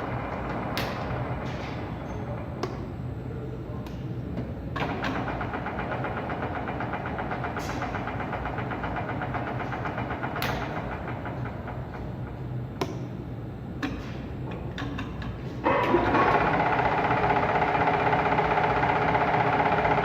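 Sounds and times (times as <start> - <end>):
pillar drill motor hum: 15.6 - 20.0.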